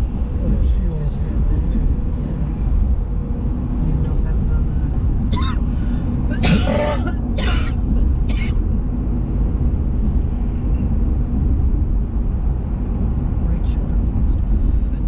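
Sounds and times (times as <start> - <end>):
vehicle rumbling: 0.0 - 15.0
person coughing: 5.4 - 5.6, 6.3 - 8.6.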